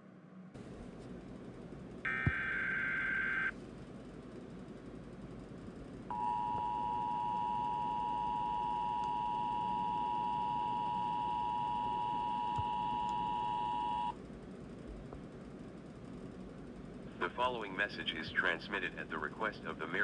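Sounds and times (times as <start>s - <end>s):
two-tone alert alarm: 2.1s - 3.5s, 6.1s - 14.1s.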